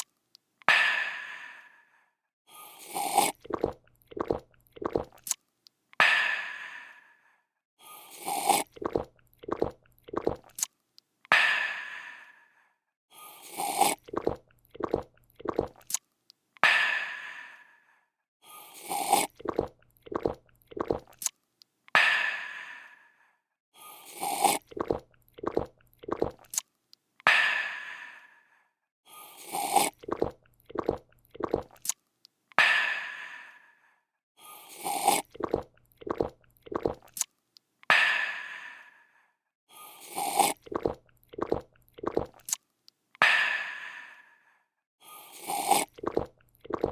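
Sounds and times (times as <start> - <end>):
person slurping a drink: 2.6 - 5.4, 7.9 - 10.7, 13.2 - 16.0, 18.5 - 21.3, 23.9 - 26.6, 29.2 - 32.0, 34.5 - 37.3, 39.8 - 42.6, 45.1 - 46.9
person gulping: 2.9 - 5.4, 8.1 - 10.7, 13.4 - 16.0, 18.8 - 21.3, 24.2 - 26.6, 29.5 - 32.0, 34.8 - 37.2, 40.1 - 42.6, 45.4 - 46.9.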